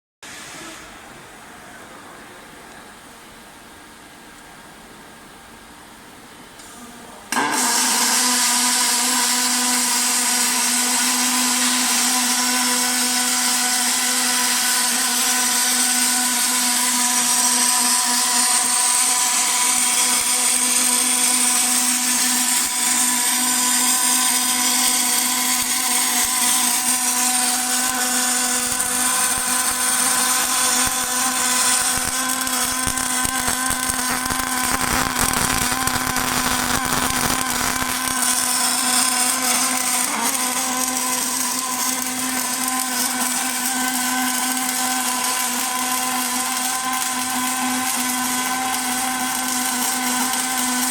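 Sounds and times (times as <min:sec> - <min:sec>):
welding machine hum and whine: 0:06.7 - 0:50.9.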